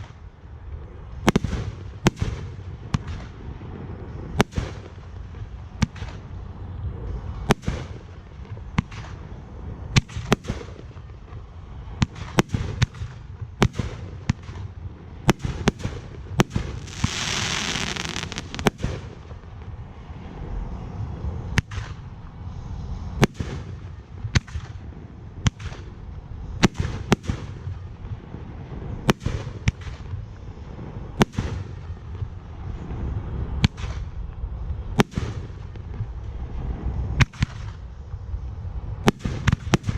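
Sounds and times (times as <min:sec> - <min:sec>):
fireworks bursting: 0:07.5 - 0:19.8
fireworks hissing: 0:15.5 - 0:19.4.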